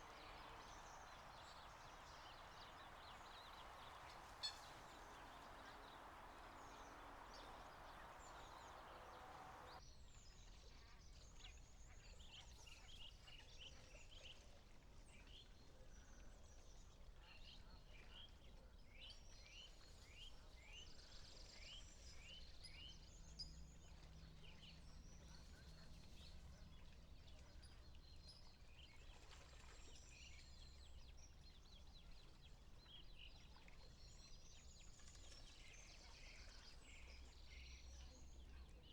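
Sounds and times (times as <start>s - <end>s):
low steady rumble: 0.0s - 9.8s
small birds chirping: 0.0s - 9.8s
soft rushing noise: 0.0s - 9.8s.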